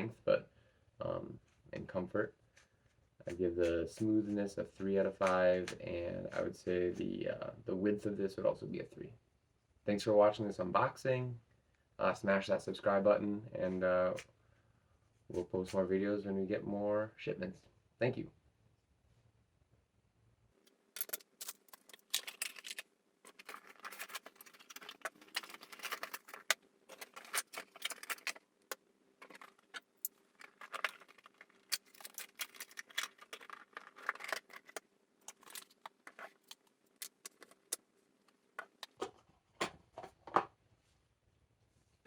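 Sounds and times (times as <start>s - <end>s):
small plastic parts rattling: 21.0s - 39.2s.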